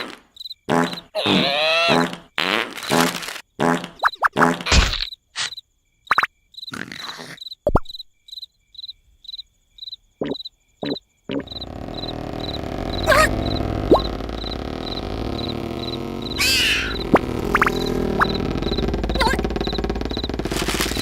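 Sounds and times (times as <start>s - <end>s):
cricket chirping: 0.0s - 1.1s, 4.0s - 21.0s
comic blips: 10.2s - 21.0s.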